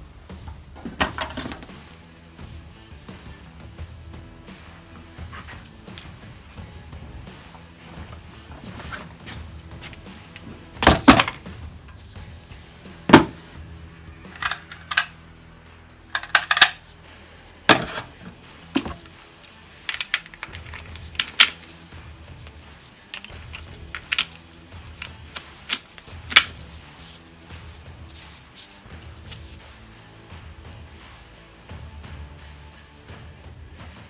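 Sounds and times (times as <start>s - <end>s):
quiet background music: 0.0s - 34.0s.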